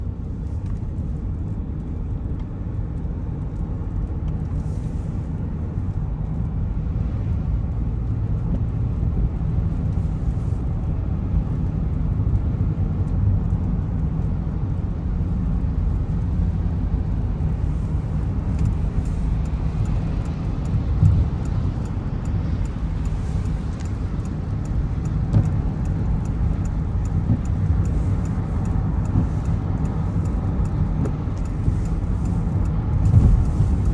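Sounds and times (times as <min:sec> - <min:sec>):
car tyres and engine rumbling: 0:00.0 - 0:33.9.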